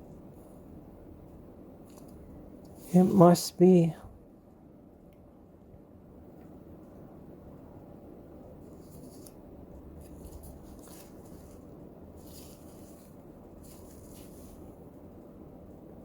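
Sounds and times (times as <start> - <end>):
low background hum: 0.0 - 16.0
packaging rustling: 10.0 - 14.8.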